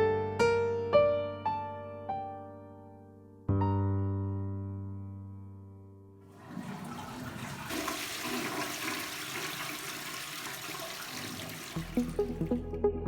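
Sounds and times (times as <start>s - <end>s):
toilet flushing: 6.3s - 12.6s.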